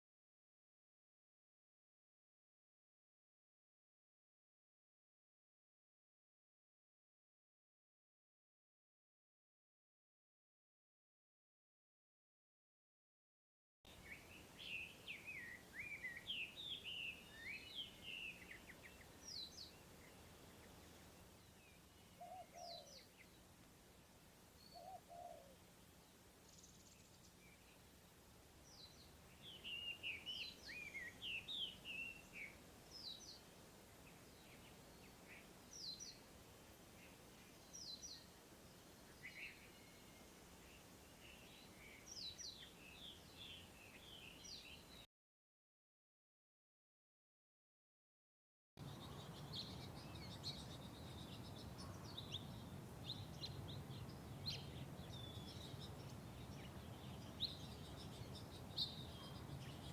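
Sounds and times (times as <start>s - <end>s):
small birds chirping: 13.9s - 45.1s, 48.8s - 59.9s
short lower bird calls: 22.0s - 23.3s, 24.6s - 25.6s.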